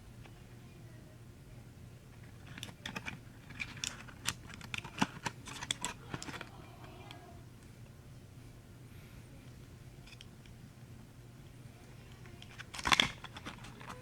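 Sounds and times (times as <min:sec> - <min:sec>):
packaging clicks and crinkles: 0:02.4 - 0:07.1, 0:12.2 - 0:14.0.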